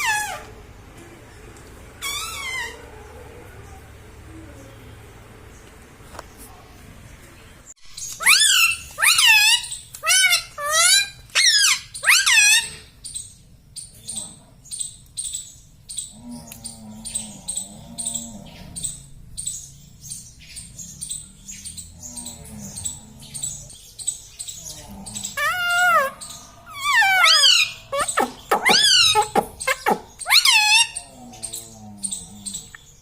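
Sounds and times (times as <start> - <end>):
parrot chirping: 0.0 - 0.5, 2.0 - 3.2, 7.9 - 13.9, 18.8 - 33.0
parrot wavering calls: 0.0 - 0.5, 2.0 - 2.9, 8.2 - 12.9, 24.7 - 32.8.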